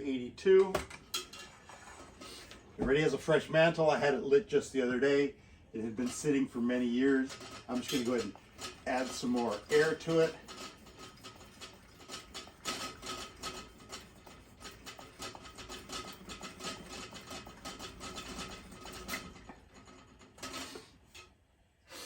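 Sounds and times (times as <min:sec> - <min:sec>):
lantern plunger pump strokes: 0:05.8 - 0:21.2.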